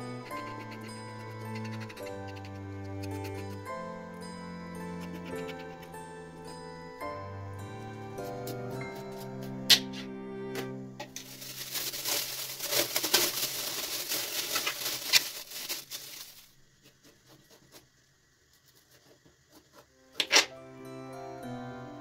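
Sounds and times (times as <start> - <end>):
crackling and rustling: 11.0 - 20.5.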